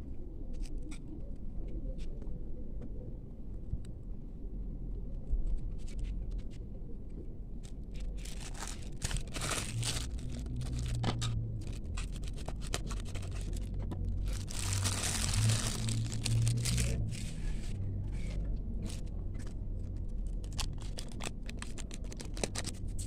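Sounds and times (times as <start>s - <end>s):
packaging crinkling and tearing: 8.1s - 17.3s, 20.4s - 22.8s.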